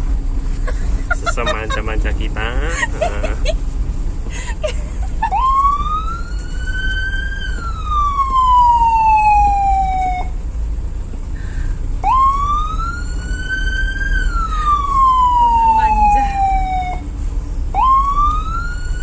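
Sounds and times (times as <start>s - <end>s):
low rumble of moving vehicle: 0.0s - 19.0s
rising and falling siren: 5.3s - 10.4s, 12.0s - 17.1s, 17.7s - 19.0s.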